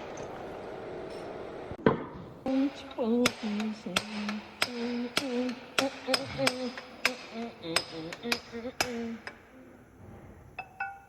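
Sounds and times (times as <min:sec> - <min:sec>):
hammer blows on steel: 0:02.5 - 0:09.4.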